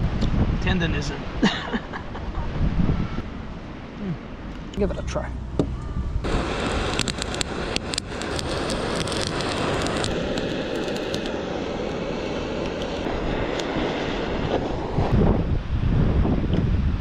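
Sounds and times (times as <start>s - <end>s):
sharp crackles: 4.6s - 15.1s
blowtorch flame hissing: 6.2s - 16.5s.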